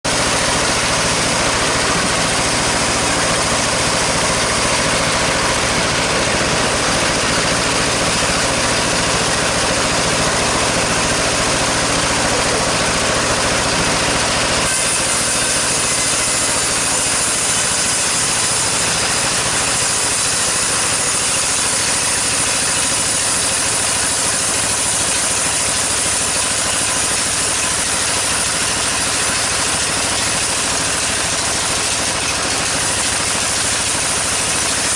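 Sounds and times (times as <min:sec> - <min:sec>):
drive engine hum: 0:00.1 - 0:20.0
saw cutting timber: 0:00.1 - 0:34.9.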